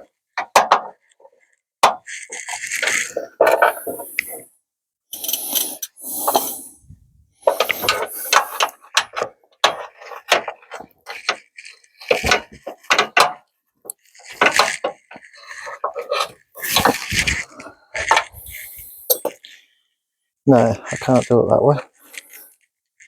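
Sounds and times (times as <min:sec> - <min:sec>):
metal hand tools clinking and scraping: 0:05.1 - 0:08.7, 0:15.4 - 0:19.5.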